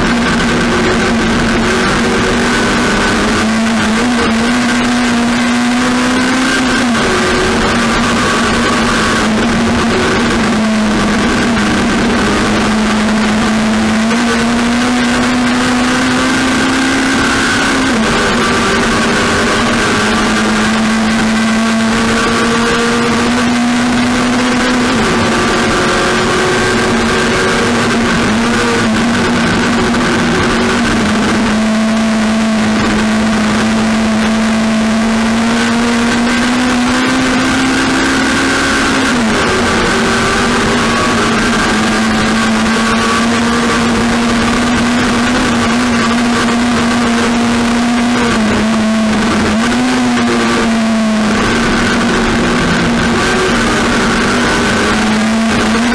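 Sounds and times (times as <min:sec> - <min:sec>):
race car engines at high revs: 0:00.0 - 0:55.9.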